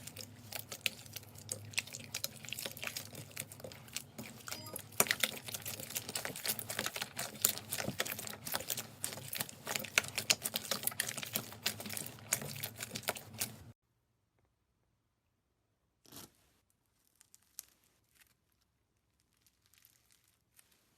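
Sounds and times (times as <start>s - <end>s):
slime crackling and popping: 0.0s - 13.7s.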